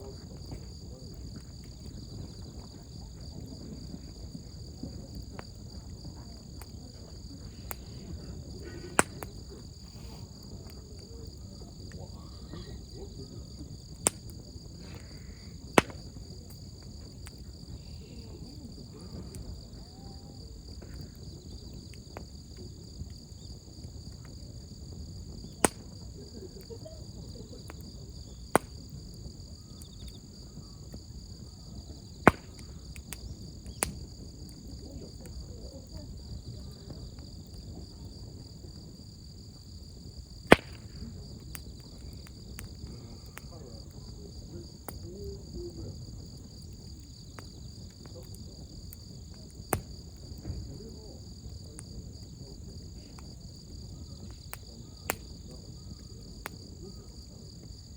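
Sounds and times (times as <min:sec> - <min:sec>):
burning wood popping: 0:00.0 - 0:37.9, 0:39.5 - 0:57.9
campfire rumbling: 0:00.0 - 0:57.9
insects chirring: 0:00.0 - 0:57.9.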